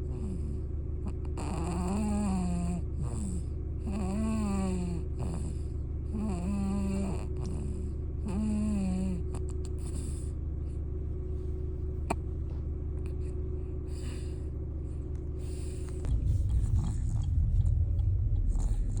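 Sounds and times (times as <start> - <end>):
steady low hum: 0.0 - 19.0
baby snoring: 1.2 - 10.2, 15.4 - 19.0.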